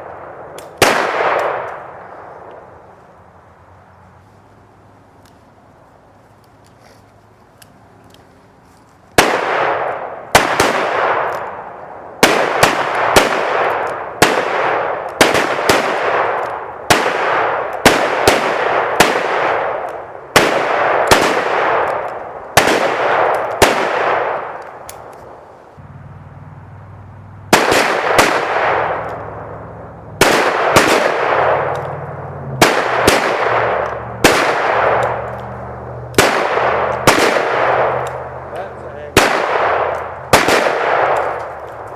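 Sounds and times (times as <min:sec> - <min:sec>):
handgun shots echoing: 0:00.0 - 0:02.6, 0:30.2 - 0:41.9.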